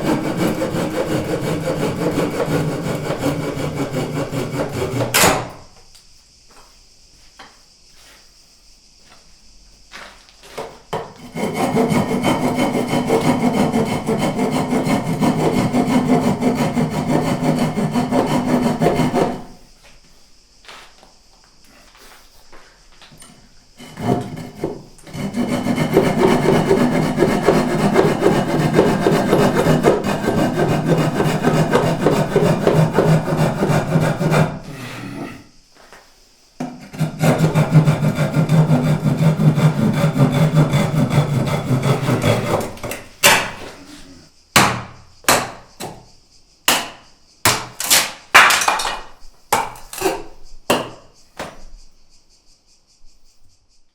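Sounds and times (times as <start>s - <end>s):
handsaw cutting wood: 0.0s - 5.5s, 11.2s - 19.6s, 23.8s - 35.3s, 36.9s - 43.8s.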